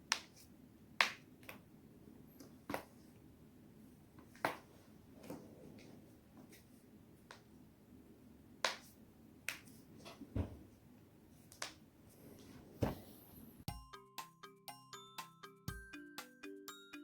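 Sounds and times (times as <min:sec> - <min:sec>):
bright chiming music: 0:13.7 - 0:17.0.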